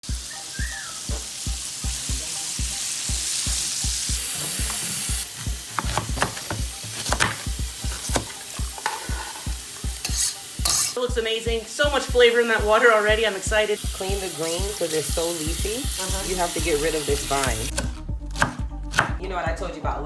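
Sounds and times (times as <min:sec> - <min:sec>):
food sizzling in frying oil: 0:00.0 - 0:17.8
low drum beat: 0:00.0 - 0:20.0
utensils clicking against pan: 0:04.2 - 0:11.1, 0:11.8 - 0:17.8.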